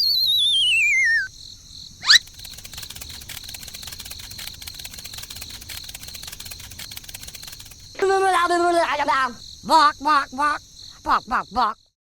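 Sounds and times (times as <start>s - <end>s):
wavering descending whistle: 0.0s - 1.3s, 2.0s - 2.2s
insect chirping: 0.0s - 12.0s.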